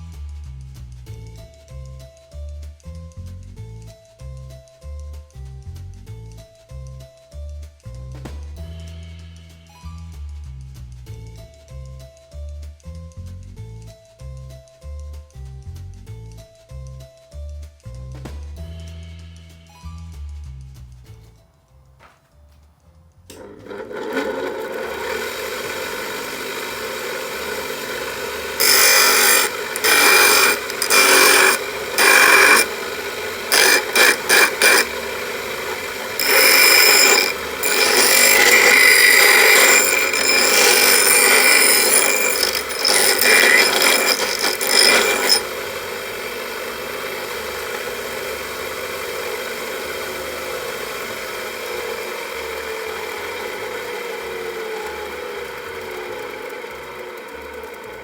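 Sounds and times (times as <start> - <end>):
tool biting into work: 23.3 - 50.1
power tool motor running: 23.4 - 58.0.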